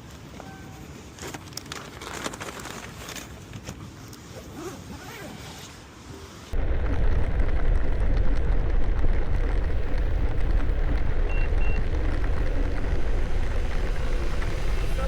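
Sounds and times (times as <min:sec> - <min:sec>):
wind buffeting microphone: 0:06.6 - 0:15.0
short high beeps: 0:11.3 - 0:11.8.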